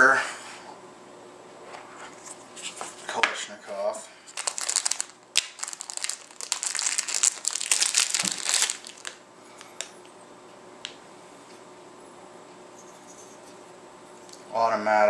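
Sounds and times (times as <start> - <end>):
packaging crinkling: 4.3 - 10.0.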